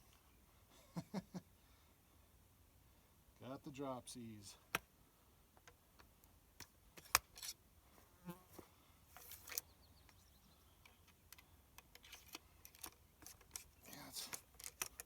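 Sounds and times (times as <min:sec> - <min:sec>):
hands clicking and tapping on rifle: 0:10.8 - 0:15.0.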